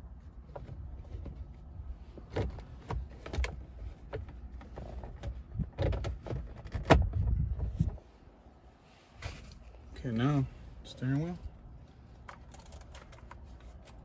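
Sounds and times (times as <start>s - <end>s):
clicks and knocks of parts: 12.2s - 14.0s.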